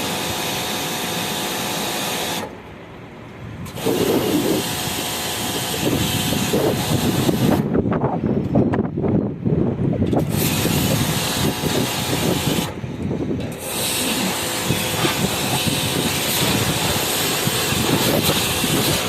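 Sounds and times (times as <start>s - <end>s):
water spraying hiss: 3.7s - 7.6s, 10.2s - 12.8s, 13.5s - 19.0s.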